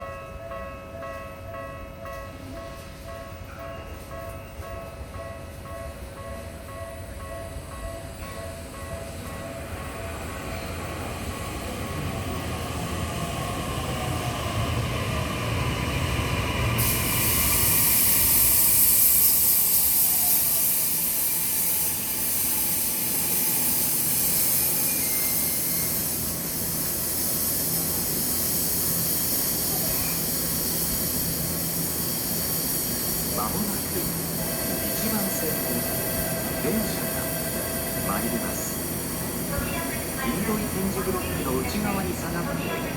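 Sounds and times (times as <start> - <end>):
electric train running by: 0.0 - 42.9
loud hiss: 16.7 - 42.9.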